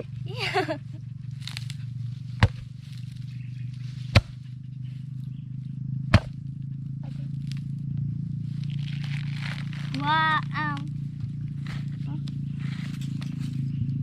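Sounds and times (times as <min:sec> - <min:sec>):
steady low hum: 0:00.0 - 0:14.0
machete chopping coconut: 0:01.4 - 0:03.2, 0:04.0 - 0:04.5, 0:06.1 - 0:06.4.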